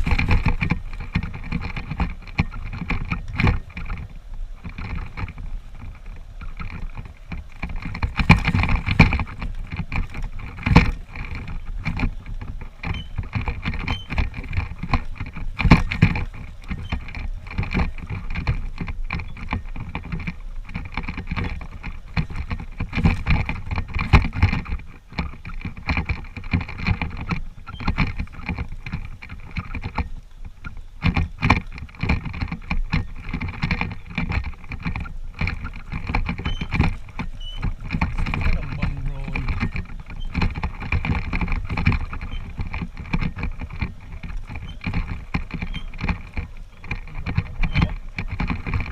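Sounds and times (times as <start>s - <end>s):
knocks and rattles of bike: 0.0s - 48.9s
motorcycle engine running: 0.0s - 48.9s.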